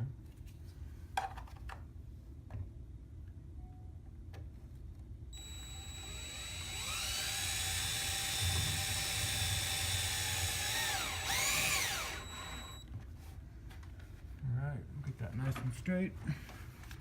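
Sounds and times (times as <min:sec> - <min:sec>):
cordless drill motor whining: 0:05.4 - 0:12.8.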